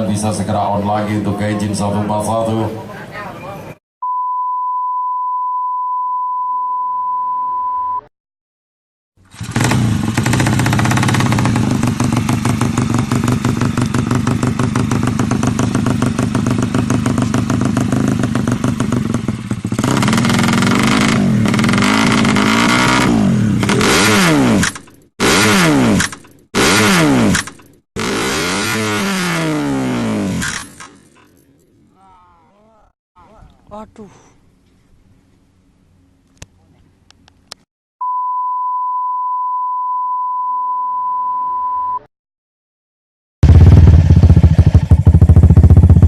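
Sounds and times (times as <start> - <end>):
steady beep tone: 4.0 - 8.1, 38.0 - 42.1
motorcycle engine revving: 9.2 - 31.1, 43.4 - 46.0.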